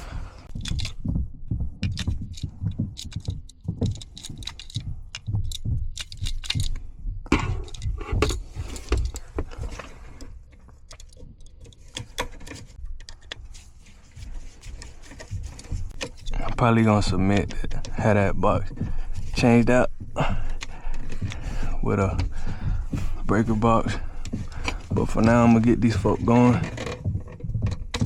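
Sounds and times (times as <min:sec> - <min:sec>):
dull thumps: 0:00.0 - 0:10.2, 0:14.2 - 0:28.0
rustling: 0:00.0 - 0:28.0
metal jingling and clinking: 0:01.8 - 0:09.8.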